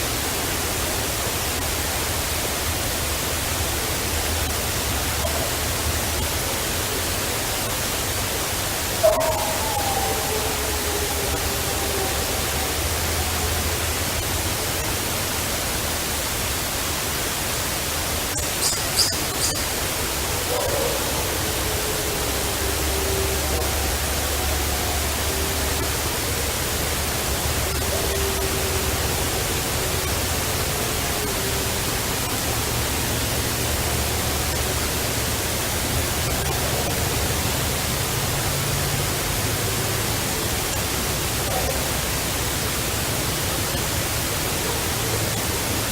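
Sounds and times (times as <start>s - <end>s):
heavy steady hiss: 0.0s - 45.9s
faint wavering calls: 8.9s - 14.2s, 18.3s - 35.3s.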